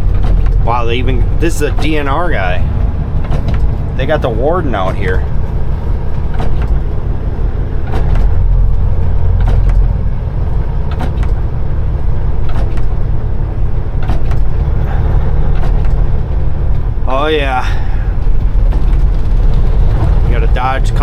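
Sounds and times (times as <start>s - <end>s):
truck engine and road drone: 0.0s - 21.0s.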